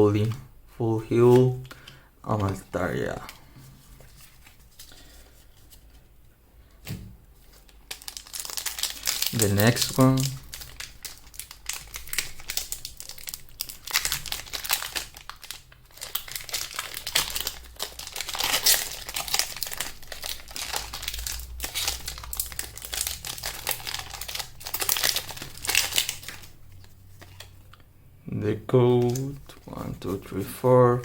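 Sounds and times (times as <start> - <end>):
foil wrapper crinkling: 7.5 - 27.7, 28.9 - 30.2.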